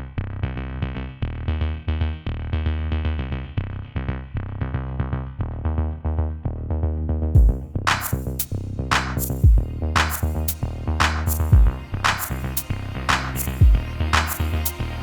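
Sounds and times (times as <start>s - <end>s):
deep bass line: 0.0s - 15.0s
electronic music: 7.4s - 15.0s.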